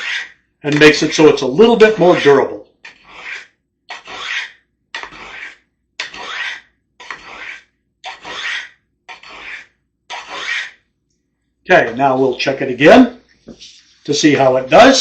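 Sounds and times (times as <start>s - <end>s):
knife rasping on ceramic sharpener: 0.0s - 0.4s, 1.9s - 10.8s.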